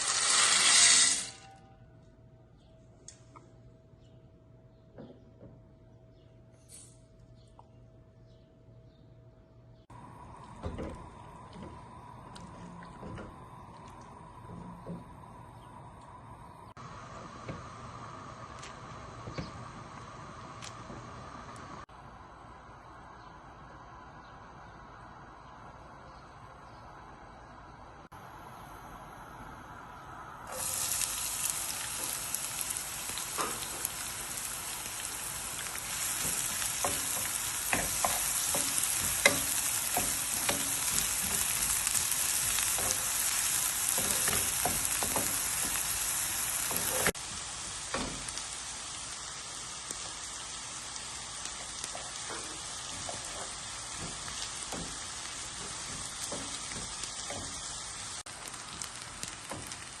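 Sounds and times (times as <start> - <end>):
food sizzling in a frying pan: 0.0 - 1.5, 30.5 - 60.0.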